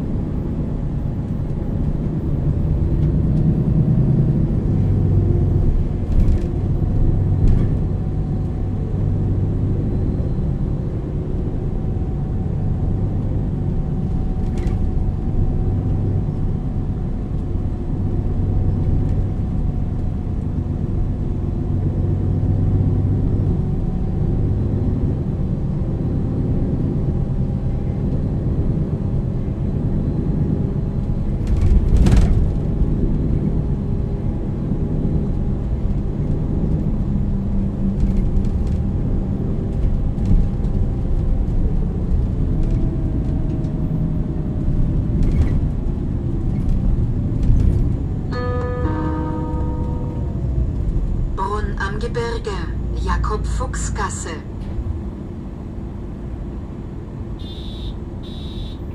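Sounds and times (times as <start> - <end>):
bus diesel engine drone: 0.0 - 58.9.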